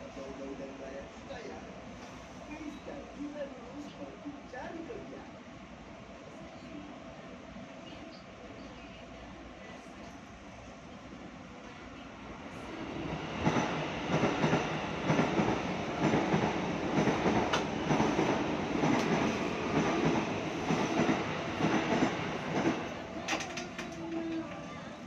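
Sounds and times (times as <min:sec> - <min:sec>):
train wheels clattering on rails: 0:13.4 - 0:24.5.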